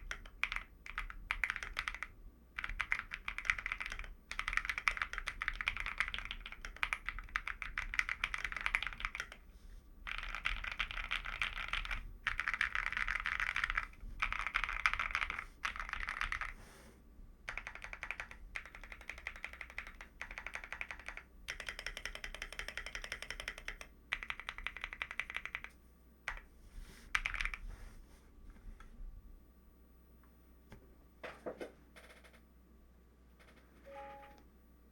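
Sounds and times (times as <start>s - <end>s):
fast typing on mechanical keyboard: 0.0s - 16.6s, 17.4s - 25.7s, 26.3s - 26.5s, 27.1s - 27.6s, 32.0s - 32.4s.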